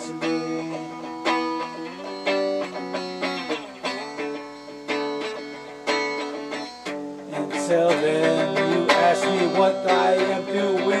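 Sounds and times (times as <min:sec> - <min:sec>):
guitar playing chords: 0:00.0 - 0:11.0.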